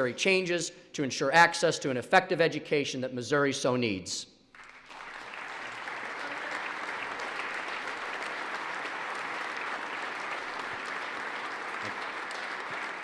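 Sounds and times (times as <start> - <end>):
crowd applauding: 4.5 - 13.0.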